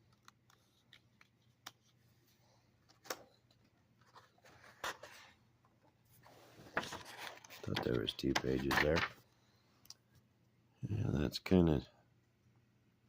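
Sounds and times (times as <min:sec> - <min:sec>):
pages turning with light ticks: 0:00.0 - 0:05.4, 0:06.2 - 0:09.2
paper rustling: 0:06.1 - 0:09.2.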